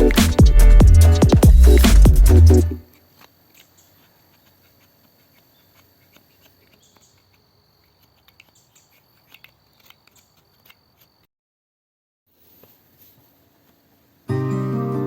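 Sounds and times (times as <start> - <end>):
steady high tone: 0.0 - 2.8.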